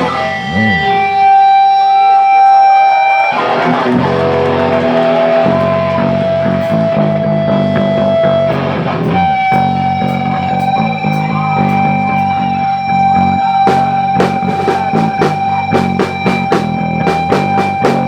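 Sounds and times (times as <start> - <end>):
held electric guitar notes: 3.2 - 18.0
live rock band playing: 3.4 - 18.0.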